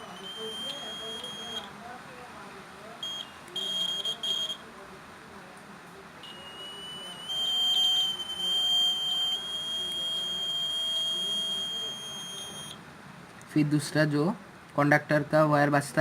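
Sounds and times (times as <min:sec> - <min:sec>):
piezo buzzer beeping: 0:00.0 - 0:01.7, 0:03.0 - 0:04.6, 0:06.2 - 0:12.8.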